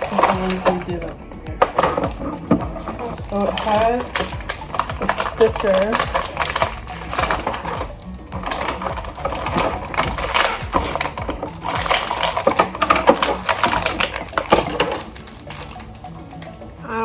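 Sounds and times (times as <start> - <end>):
plastic packaging crinkling: 0.0 - 16.8.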